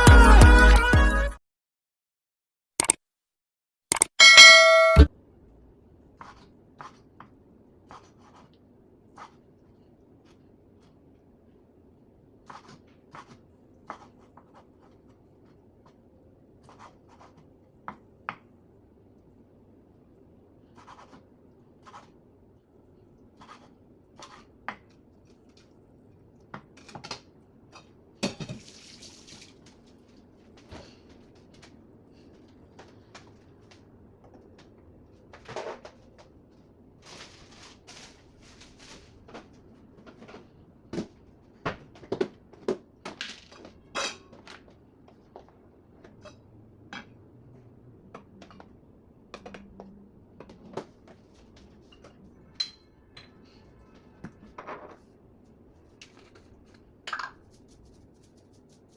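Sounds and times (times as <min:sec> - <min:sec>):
utensils and dishes clinking: 0:51.9 - 0:53.5.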